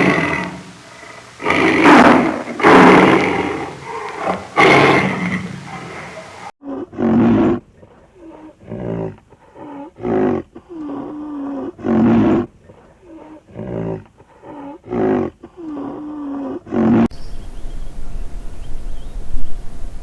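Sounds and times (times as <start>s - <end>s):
big cat roaring: 0.0s - 7.6s, 8.2s - 12.5s, 13.1s - 17.1s.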